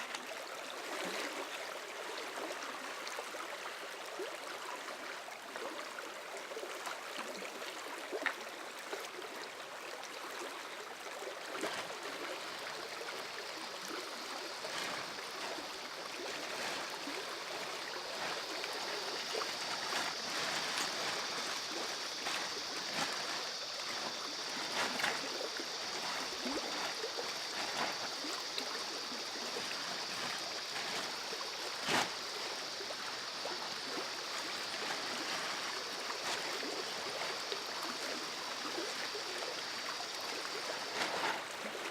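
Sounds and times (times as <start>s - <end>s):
river water flowing: 0.0s - 41.9s
steady high hiss: 11.7s - 41.9s.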